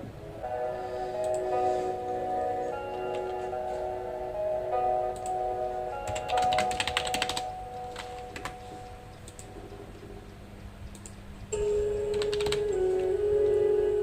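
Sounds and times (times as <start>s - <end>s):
soft background music: 0.0s - 10.2s, 11.5s - 14.0s
computer keyboard typing: 6.0s - 8.6s, 12.1s - 12.8s.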